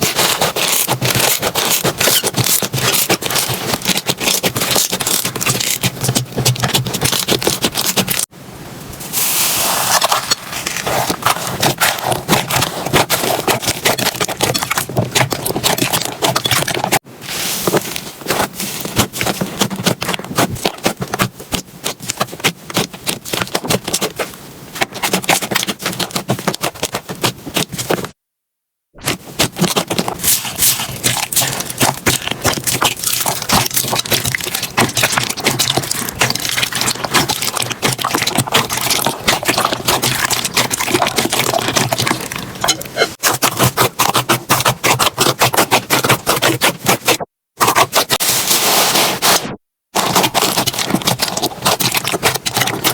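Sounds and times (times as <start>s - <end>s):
slime crackling and popping: 0.0s - 8.3s, 29.1s - 48.7s, 50.0s - 52.9s.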